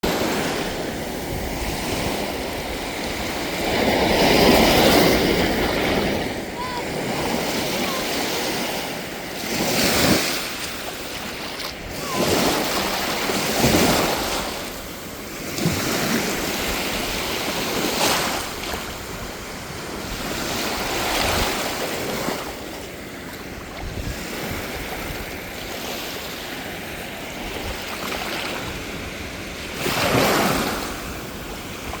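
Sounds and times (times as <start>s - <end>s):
sea waves breaking on beach: 0.0s - 32.0s
wind buffeting microphone: 23.5s - 25.6s.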